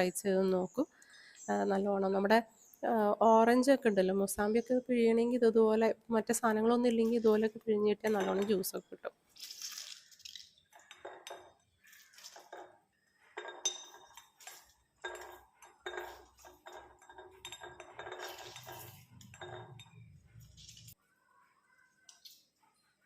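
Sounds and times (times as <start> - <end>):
utensils and dishes clinking: 8.0 - 8.8, 9.4 - 21.0.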